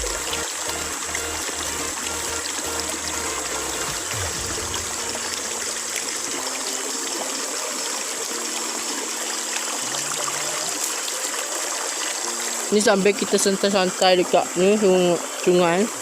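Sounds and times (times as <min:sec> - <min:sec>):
water rushing over rocks: 0:00.0 - 0:12.7.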